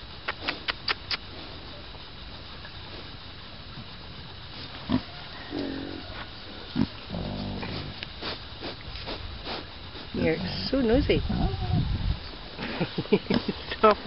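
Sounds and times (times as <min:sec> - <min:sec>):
piglet snuffling: 0:00.2 - 0:01.8, 0:04.6 - 0:11.7.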